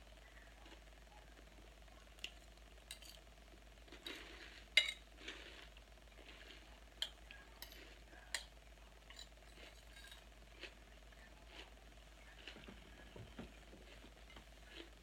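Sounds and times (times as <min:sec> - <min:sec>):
fork scraping a bowl: 0:04.0 - 0:08.5, 0:09.1 - 0:10.3
crunching salad: 0:09.1 - 0:12.9, 0:13.8 - 0:15.0.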